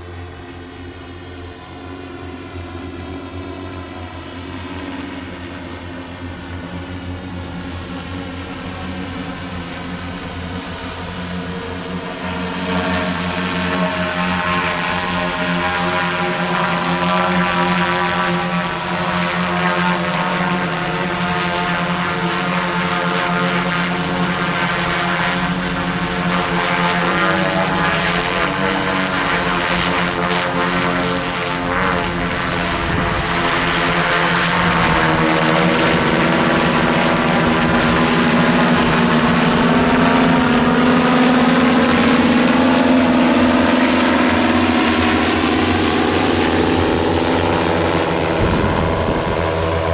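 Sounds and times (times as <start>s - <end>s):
drone propellers humming: 0.0s - 49.9s.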